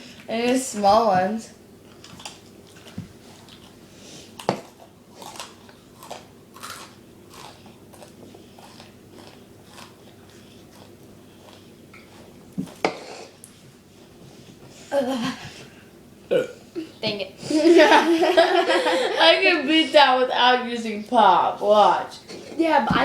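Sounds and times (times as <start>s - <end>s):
crunching and chewing: 1.8s - 12.8s.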